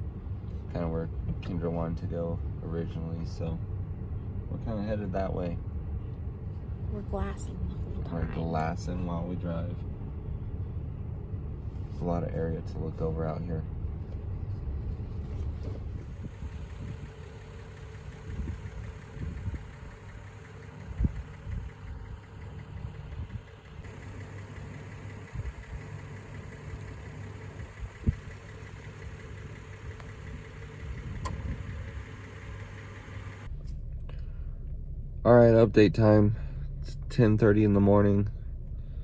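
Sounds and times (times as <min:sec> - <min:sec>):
vehicle engine and road rumble: 0:00.0 - 0:39.0.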